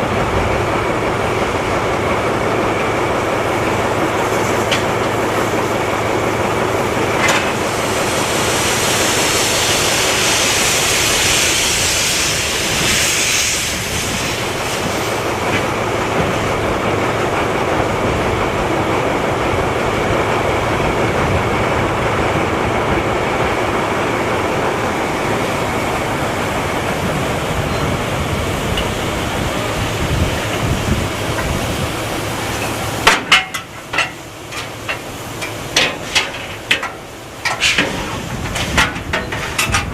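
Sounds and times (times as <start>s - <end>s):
steam locomotive rumbling: 0.0s - 39.9s
steam hiss: 3.6s - 16.6s, 23.8s - 39.8s.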